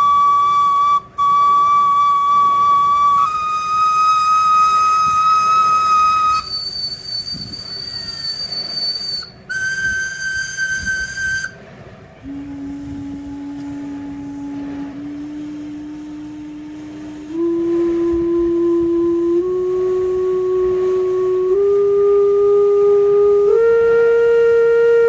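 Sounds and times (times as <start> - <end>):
calliope whistles: 0.0 - 11.6.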